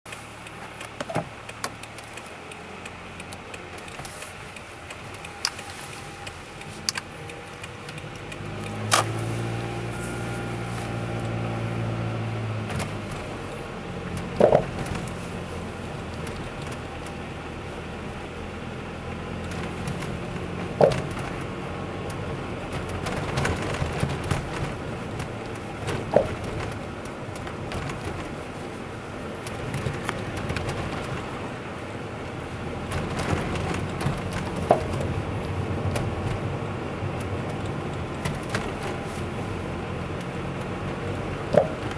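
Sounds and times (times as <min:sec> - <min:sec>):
low vehicle rumble: 0:00.1 - 0:41.9
sharp suspension knocks: 0:14.2 - 0:15.2, 0:19.5 - 0:21.5, 0:41.5 - 0:41.9.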